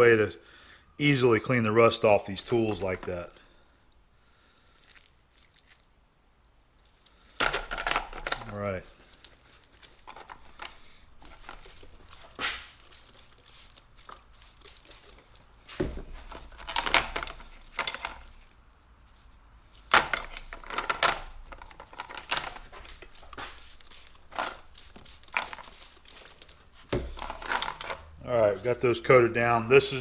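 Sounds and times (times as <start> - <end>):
aerosol can spraying: 23.0 - 27.2.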